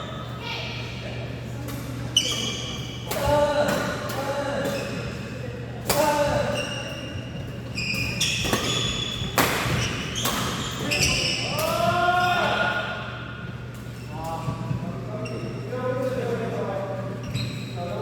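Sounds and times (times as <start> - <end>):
shoes squeaking on court: 1.9 - 3.1, 6.2 - 11.6, 13.8 - 16.4, 17.1 - 18.0
racket striking shuttlecock: 9.3 - 10.6.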